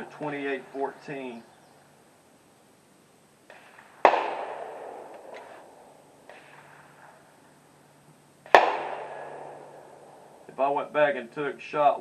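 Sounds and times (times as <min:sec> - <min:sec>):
gunshots with echo: 0:03.5 - 0:07.4, 0:08.4 - 0:10.5.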